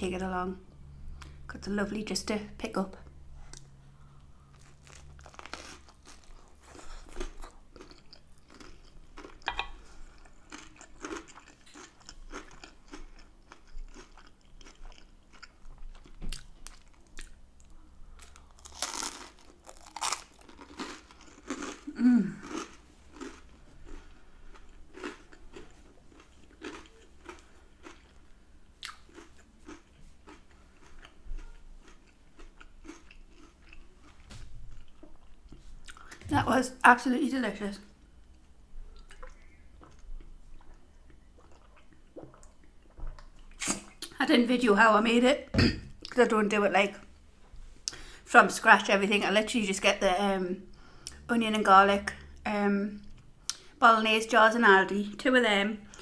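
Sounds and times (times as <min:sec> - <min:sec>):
person chewing food: 0:03.4 - 0:36.3, 0:38.2 - 0:44.2.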